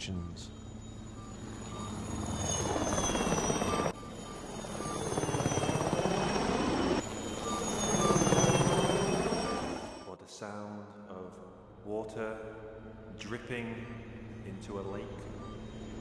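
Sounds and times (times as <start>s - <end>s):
helicopter rotor chop: 0.9s - 10.1s.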